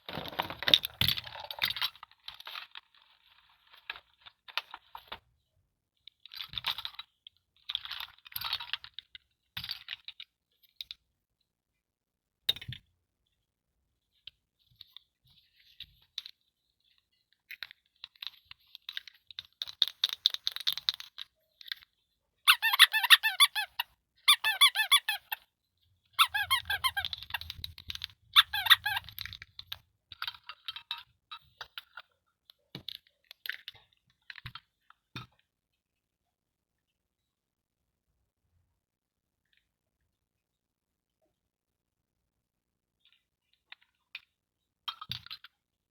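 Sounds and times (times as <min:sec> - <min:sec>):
toys and packaging handled: 0:00.0 - 0:11.3, 0:12.5 - 0:36.1
squeaking of items rubbed together: 0:22.5 - 0:25.4, 0:26.2 - 0:27.8, 0:28.4 - 0:29.2.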